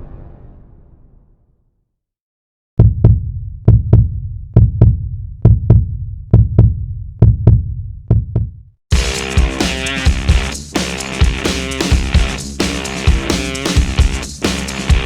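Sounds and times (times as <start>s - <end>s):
heartbeat thumps: 2.8s - 9.6s.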